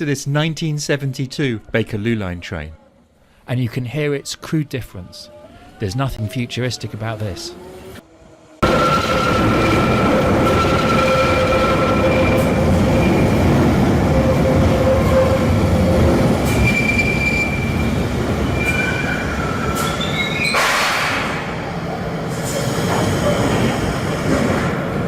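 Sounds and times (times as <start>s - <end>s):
train wheels and motors rumbling: 6.8s - 25.0s.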